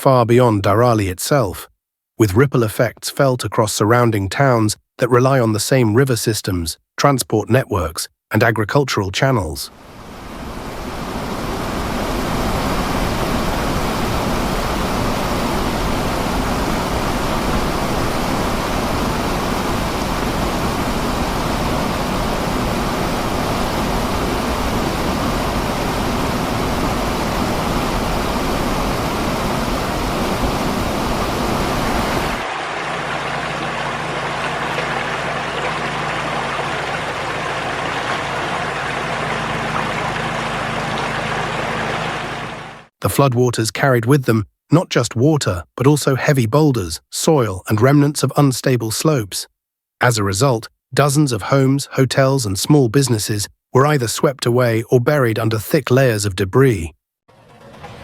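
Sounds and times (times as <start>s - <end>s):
floodwater rushing: 9.8s - 42.9s.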